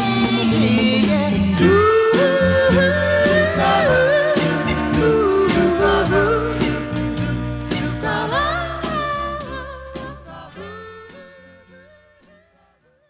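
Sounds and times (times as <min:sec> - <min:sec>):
steady drum beat: 0:00.0 - 0:10.7
oldies rock and roll song: 0:00.0 - 0:12.5.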